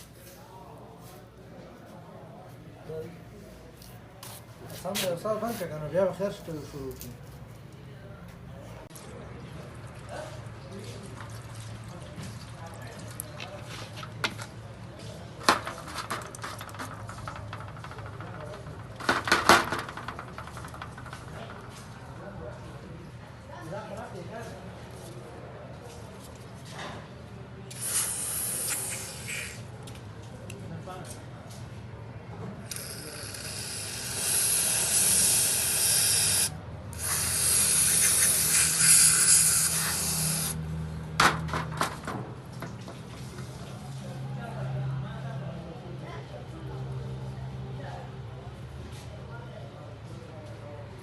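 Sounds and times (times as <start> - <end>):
air spray hissing: 27.7 - 29.7, 32.7 - 40.6.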